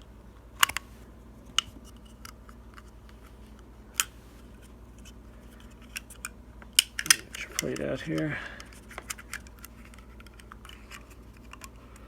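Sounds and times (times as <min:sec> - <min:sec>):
plastic gun parts clicking: 0:00.6 - 0:00.8, 0:05.0 - 0:12.0.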